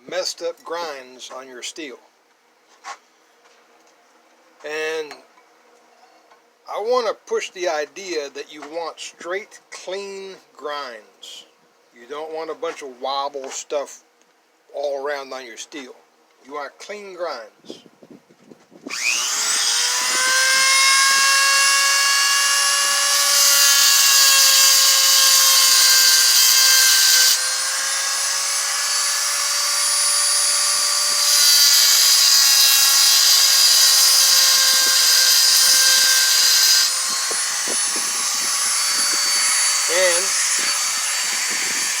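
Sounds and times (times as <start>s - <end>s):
grinder wheel whining: 18.9s - 42.0s.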